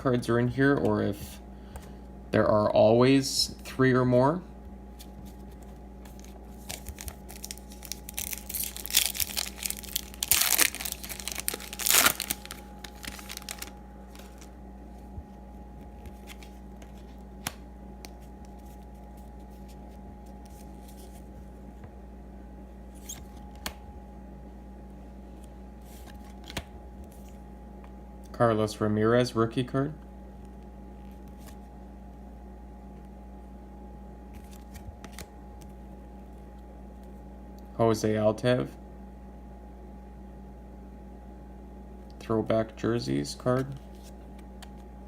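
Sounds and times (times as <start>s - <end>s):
electrical hum: 0.0s - 45.0s
foil crinkling: 6.1s - 14.5s
foil wrapper tearing: 6.1s - 14.5s.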